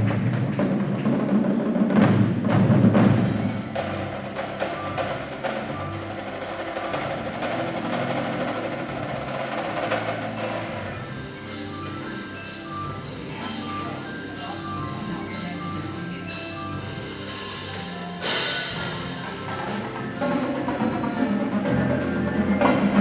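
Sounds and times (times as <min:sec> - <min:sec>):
loud drum hits: 0:00.0 - 0:11.2
mallet keyboards and bells: 0:02.6 - 0:23.0.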